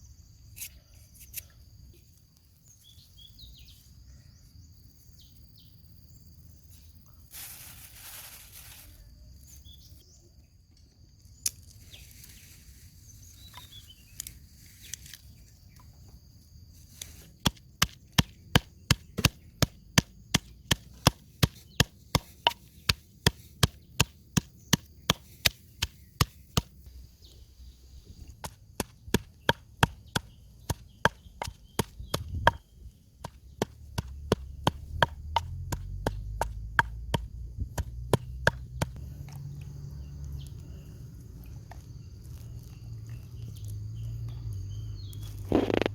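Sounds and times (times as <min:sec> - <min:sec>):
birds chirping: 0:17.4 - 0:42.2, 0:42.8 - 0:45.9.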